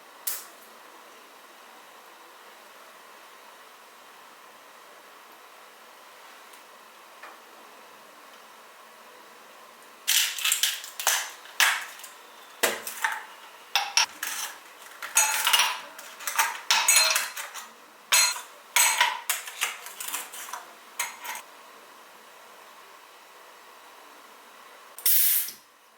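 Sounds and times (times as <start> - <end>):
dishes and cutlery clattering: 13.8 - 21.4.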